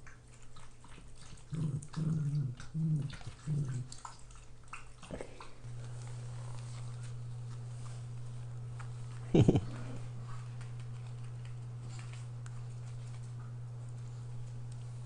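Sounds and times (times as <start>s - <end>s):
steady low hum: 0.0s - 15.0s
dog growling: 1.3s - 4.2s.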